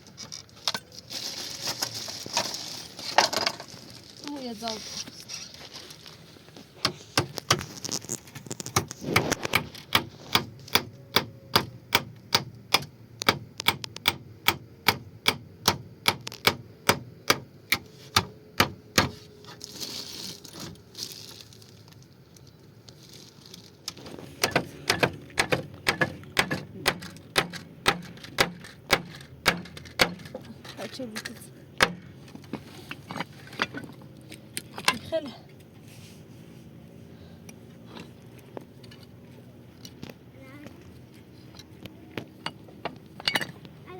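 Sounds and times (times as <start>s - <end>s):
rapid sharp knocks: 24.4s - 30.2s.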